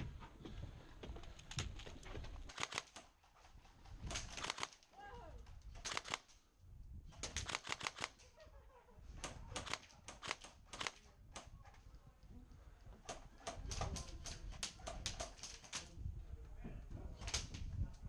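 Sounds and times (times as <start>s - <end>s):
airsoft guns firing bursts: 4.1s - 4.8s.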